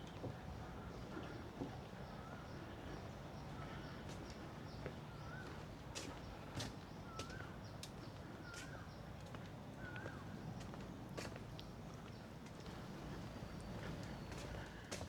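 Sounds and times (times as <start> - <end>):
low outdoor background: 7.6 - 15.0.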